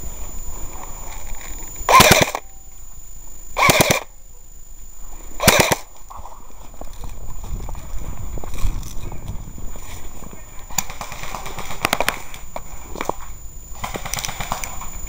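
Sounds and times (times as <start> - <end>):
airsoft gun rapid fire: 1.9 - 2.4, 3.6 - 4.1, 5.4 - 5.9, 10.7 - 12.2, 13.7 - 14.8.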